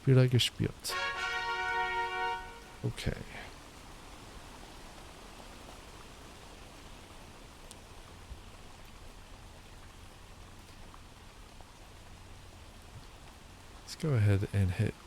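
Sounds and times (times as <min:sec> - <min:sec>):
faint steady rain: 0:00.0 - 0:15.0
soft drop ticks: 0:07.6 - 0:07.8.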